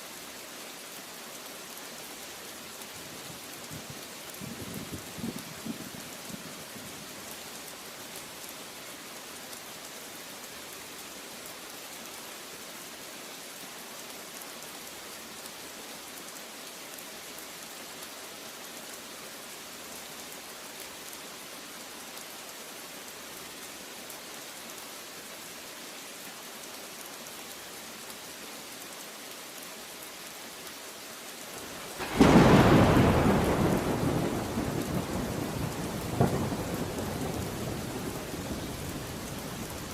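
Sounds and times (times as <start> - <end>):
heavy rain falling: 0.0 - 39.9
thunder crack and rumble: 31.9 - 39.1.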